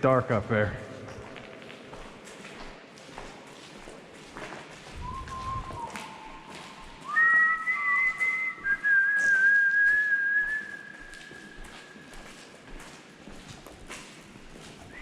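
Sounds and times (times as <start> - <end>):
person whistling: 5.0 - 11.9.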